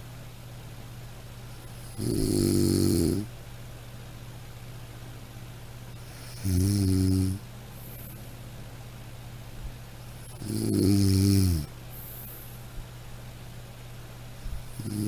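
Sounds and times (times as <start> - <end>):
person snoring: 1.8 - 3.3, 6.2 - 7.4, 10.3 - 11.7, 14.7 - 15.0.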